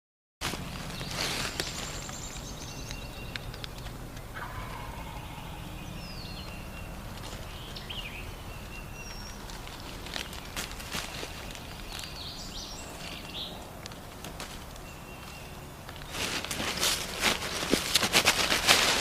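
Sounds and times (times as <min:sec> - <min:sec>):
small birds chirping: 0:00.6 - 0:19.0
turkey gobbling: 0:04.3 - 0:05.7.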